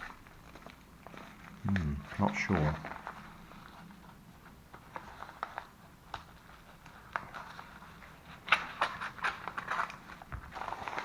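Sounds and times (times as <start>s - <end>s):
packaging crinkling: 4.9s - 11.0s.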